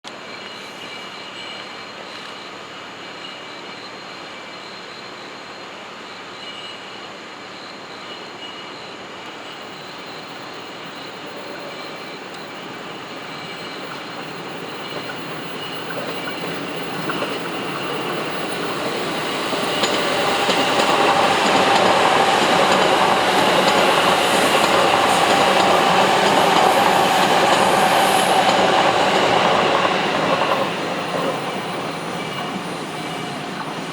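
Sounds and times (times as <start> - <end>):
electric train approaching: 9.2 - 33.9.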